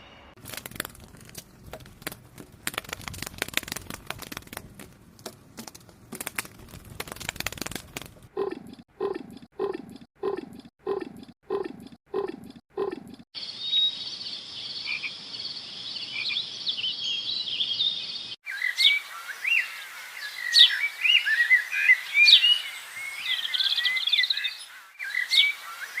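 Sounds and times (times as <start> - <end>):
crackling noise: 0.4 - 8.5.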